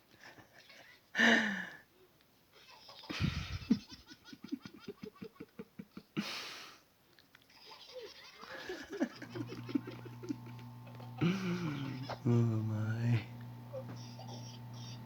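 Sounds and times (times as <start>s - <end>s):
young child laughing: 0.2s - 1.2s, 2.5s - 6.1s, 7.5s - 12.4s.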